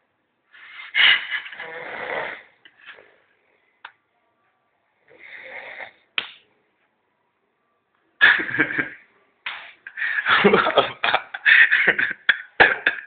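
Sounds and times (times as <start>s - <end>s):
man snoring: 1.6s - 2.5s, 5.1s - 6.0s.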